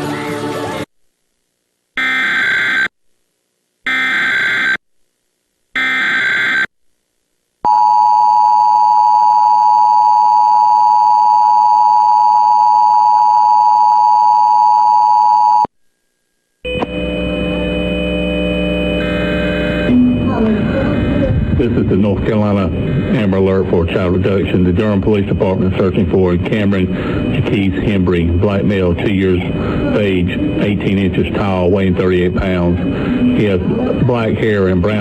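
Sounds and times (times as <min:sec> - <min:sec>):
steady low hum: 0:15.8 - 0:35.0
harsh digital data tones: 0:16.7 - 0:35.0
two-tone attention signal: 0:18.8 - 0:35.0.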